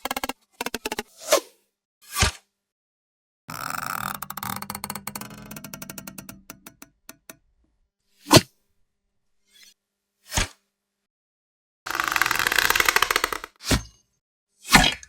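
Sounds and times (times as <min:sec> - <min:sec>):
rapid creaking clicks: 0:03.5 - 0:07.5, 0:11.9 - 0:13.6.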